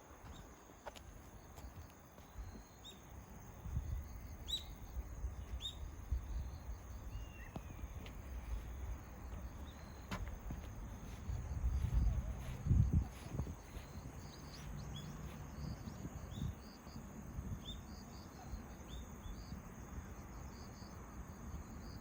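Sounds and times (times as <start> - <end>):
high falling bird chirps: 2.3 - 12.1.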